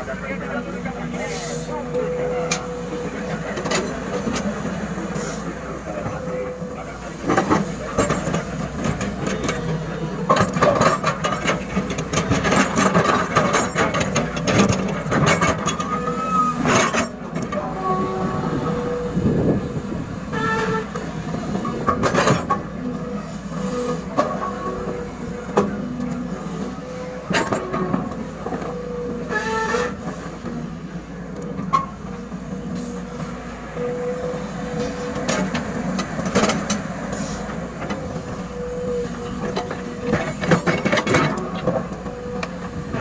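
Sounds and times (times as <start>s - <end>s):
excavator engine rumbling: 0.0s - 43.0s
metal clanks and knocks: 7.3s - 17.7s
hydraulic whine: 14.7s - 43.0s
whining squealing tones: 15.6s - 21.4s.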